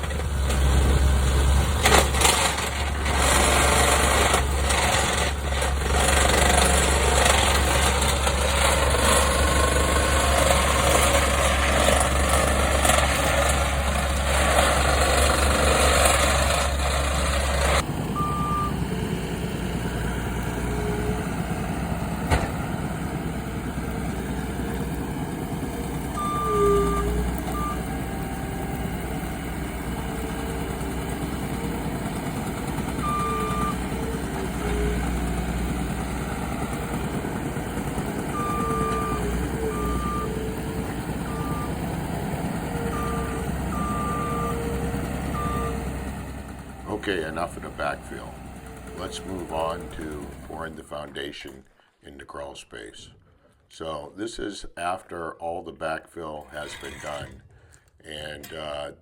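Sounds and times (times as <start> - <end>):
heavy machinery engine rattling: 0.0 - 50.7.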